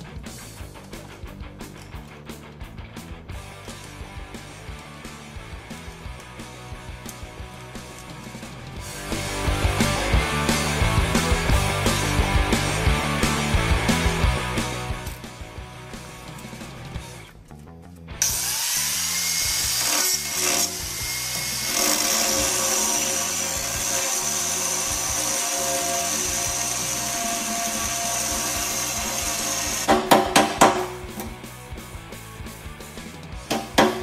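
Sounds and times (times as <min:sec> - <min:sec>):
background music: 0:00.0 - 0:34.0
power tool cutting steel: 0:18.2 - 0:31.4, 0:33.5 - 0:34.0
sharp metal knocks: 0:29.9 - 0:31.4, 0:33.5 - 0:34.0.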